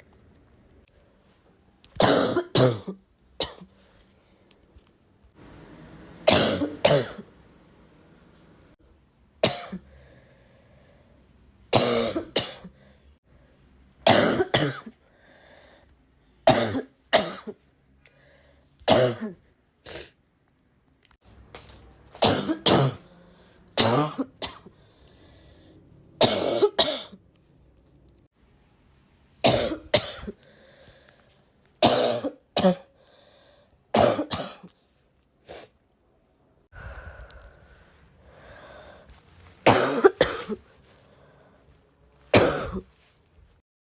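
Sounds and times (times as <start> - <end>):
person coughing: 2.0 - 3.7, 6.3 - 7.3, 9.4 - 9.8, 11.8 - 12.7, 14.1 - 15.0, 22.2 - 23.0, 23.8 - 24.7, 26.2 - 27.2, 29.4 - 30.4, 34.0 - 34.7, 39.6 - 40.6, 42.4 - 42.9.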